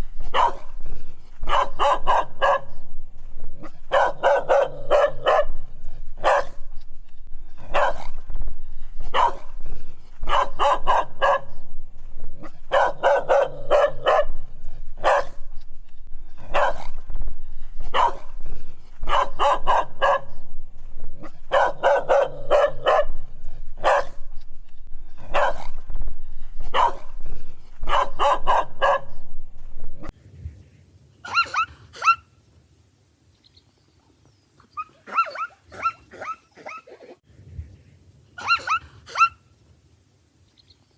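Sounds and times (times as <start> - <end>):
dog barking: 0.2 - 2.9, 3.6 - 6.8, 7.5 - 8.2, 9.0 - 11.7, 12.4 - 15.6, 16.3 - 17.2, 17.8 - 20.5, 21.2 - 24.4, 25.2 - 25.9, 26.6 - 29.3, 31.2 - 32.2, 34.8 - 37.2, 38.4 - 39.4.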